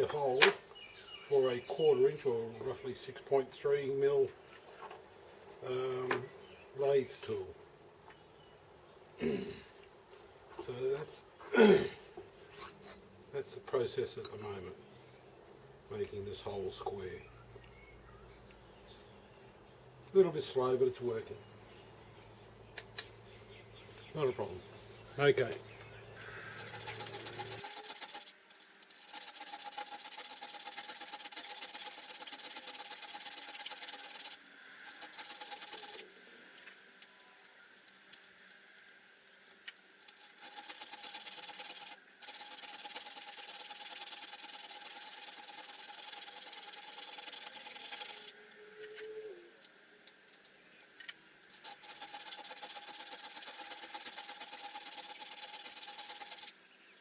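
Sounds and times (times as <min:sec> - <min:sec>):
file rasping on steel: 0:26.6 - 0:28.3, 0:29.0 - 0:34.4, 0:51.7 - 0:56.5.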